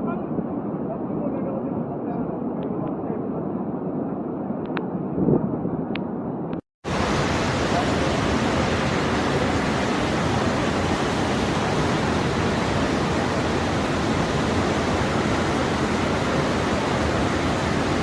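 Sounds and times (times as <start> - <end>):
flooded river rushing: 6.8 - 18.0.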